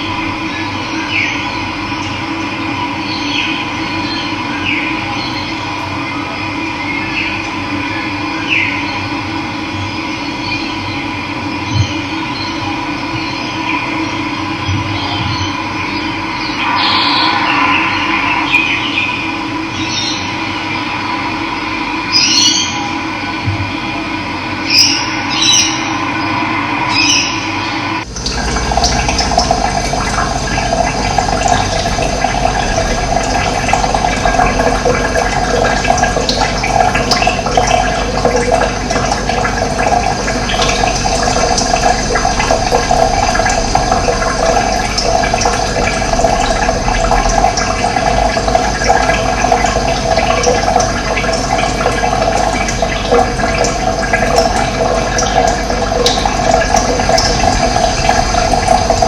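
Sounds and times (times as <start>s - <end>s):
steady tones: 15.7s - 22.1s, 25.2s - 59.0s
running water rushing: 16.3s - 21.1s, 28.0s - 59.0s.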